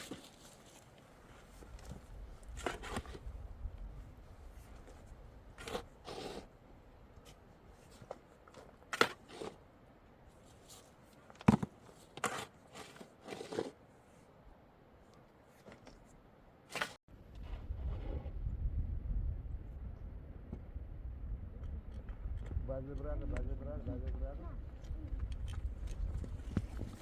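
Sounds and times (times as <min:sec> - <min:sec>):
knocks and scrapes of handling: 0:00.0 - 0:03.3, 0:04.5 - 0:06.5, 0:10.3 - 0:14.3, 0:15.0 - 0:18.3.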